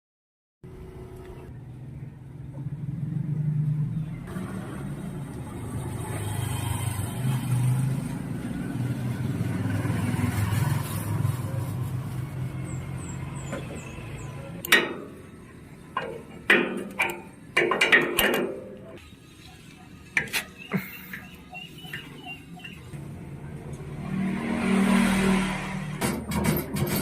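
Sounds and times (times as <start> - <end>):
engine rumbling: 0.6 - 27.0
sharp metallic clanks: 14.6 - 19.0, 26.0 - 27.0.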